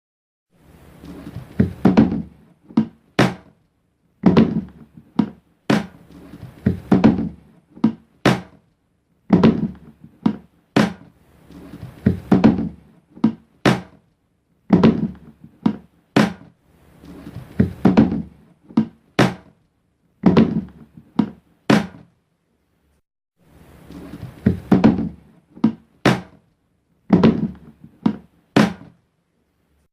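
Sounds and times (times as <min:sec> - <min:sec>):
container lid opening and shutting: 0:01.0 - 0:03.6, 0:04.2 - 0:08.6, 0:09.3 - 0:14.0, 0:14.7 - 0:19.6, 0:20.2 - 0:22.0, 0:23.8 - 0:26.4, 0:27.1 - 0:28.9.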